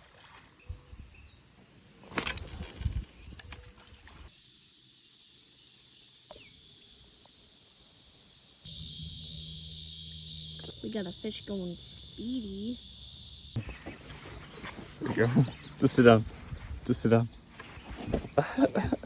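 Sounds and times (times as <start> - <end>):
shrill cicada chorus: 4.3 - 19.0.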